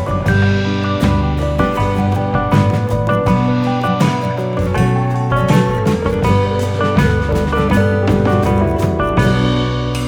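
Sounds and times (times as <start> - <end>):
instrumental music with bass line: 0.0 - 10.0
plucked strings: 0.0 - 10.0.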